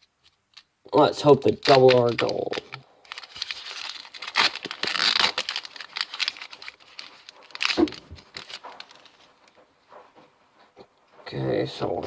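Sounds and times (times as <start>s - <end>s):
foil wrapper crinkling and tearing: 1.2s - 9.2s.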